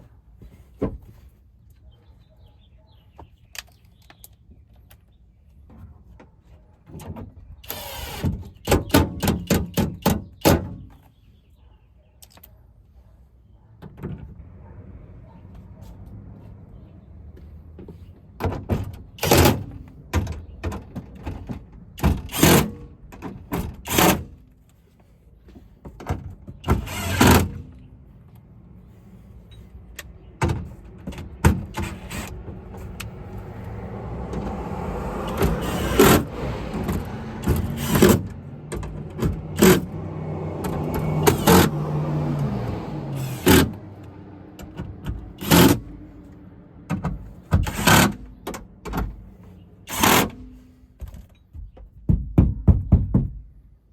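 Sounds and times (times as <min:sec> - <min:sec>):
window motor whirring: 0:26.7 - 0:27.6, 0:31.5 - 0:45.9.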